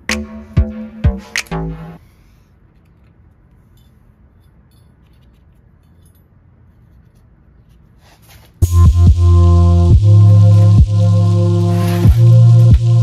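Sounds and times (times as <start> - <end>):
electronic background music: 0.0 - 2.0, 8.6 - 13.0.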